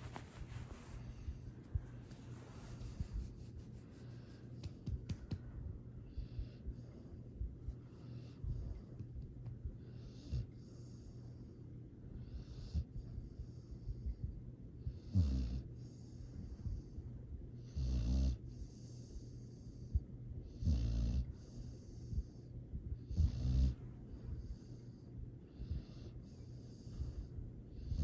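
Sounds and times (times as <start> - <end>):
soft hissing breaths: 0.0 - 9.0, 9.7 - 15.0, 18.4 - 20.3, 21.2 - 28.0
pet snoring: 14.9 - 16.1, 17.6 - 19.8, 20.5 - 22.3, 23.0 - 23.8.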